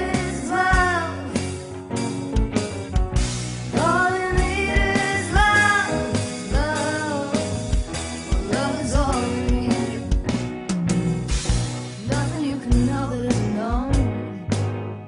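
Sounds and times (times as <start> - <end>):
person singing lead vocal: 0.0 - 1.5, 3.8 - 10.2, 12.0 - 14.4
band with steady drum beat: 0.0 - 14.7.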